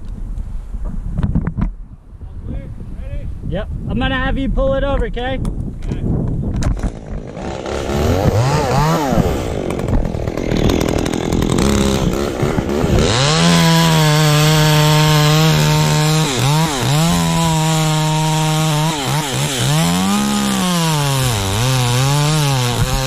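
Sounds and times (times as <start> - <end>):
chainsaw cutting wood: 6.6 - 23.0.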